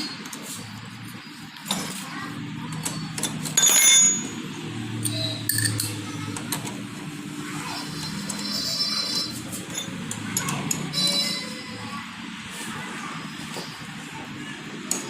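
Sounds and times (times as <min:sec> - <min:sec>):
metal tools clicking and tapping: 0:02.7 - 0:04.3, 0:05.0 - 0:06.7, 0:08.0 - 0:11.0
ringing metallic clank: 0:03.6 - 0:04.4.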